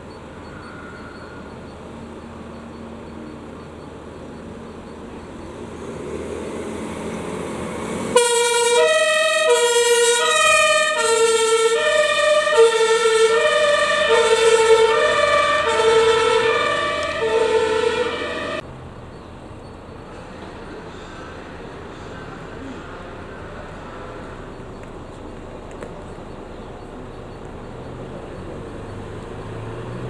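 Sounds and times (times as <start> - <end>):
passing traffic noise: 0.0 - 30.0
two-tone emergency horn: 8.1 - 18.6.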